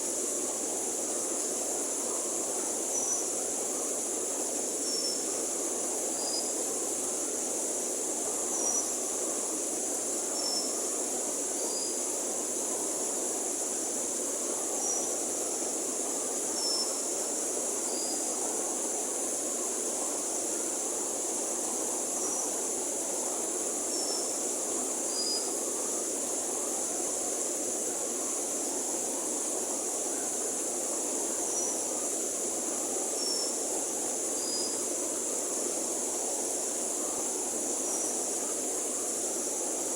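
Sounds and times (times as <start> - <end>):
constant high hiss: 0.0 - 39.9.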